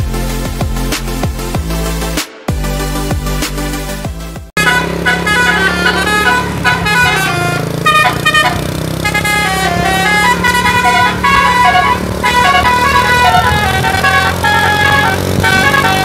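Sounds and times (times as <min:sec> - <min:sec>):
bus engine running: 0:00.0 - 0:16.0
musical air horn tune: 0:04.6 - 0:16.0.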